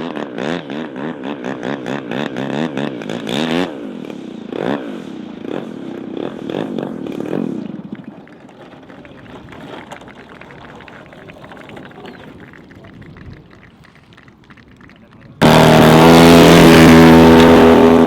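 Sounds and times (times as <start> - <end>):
model aircraft engine revving: 0.0 - 8.8, 15.4 - 18.0.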